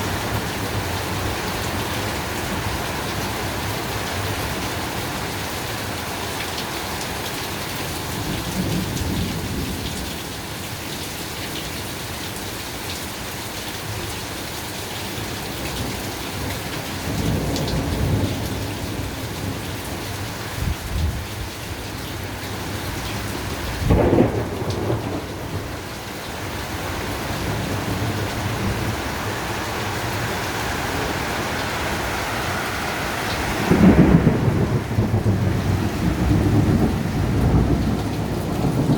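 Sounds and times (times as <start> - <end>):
heavy rain falling: 0.0 - 38.9
thunder rumbling: 23.1 - 38.9
sharp thunder clap: 23.8 - 25.7, 33.6 - 38.9.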